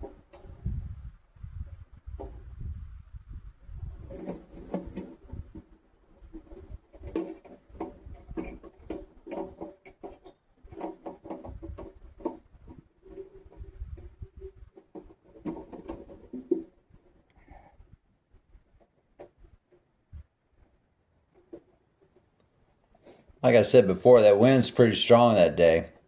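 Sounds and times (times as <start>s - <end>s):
wind rumble on microphone: 0.0s - 9.6s, 10.7s - 18.8s
metal panels clinking and rattling: 3.8s - 17.3s.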